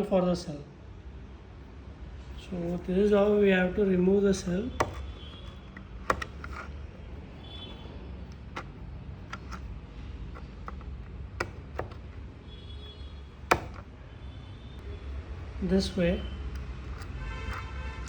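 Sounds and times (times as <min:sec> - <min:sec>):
plastic writing pad clicks and taps: 0:04.8 - 0:06.7, 0:08.3 - 0:09.7, 0:10.3 - 0:12.2, 0:13.5 - 0:13.9.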